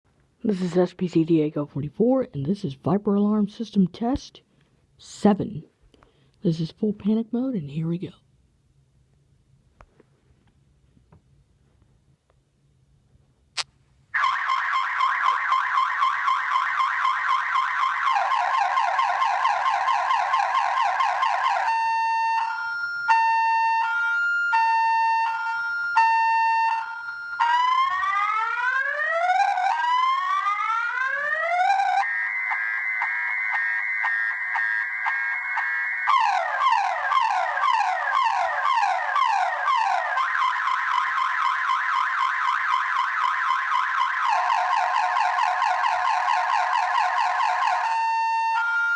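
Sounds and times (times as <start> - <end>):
car alarm siren: 14.1 - 48.9.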